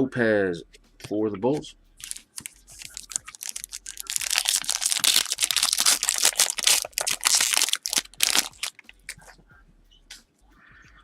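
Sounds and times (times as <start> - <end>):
foil wrapper crinkling: 2.0 - 9.2.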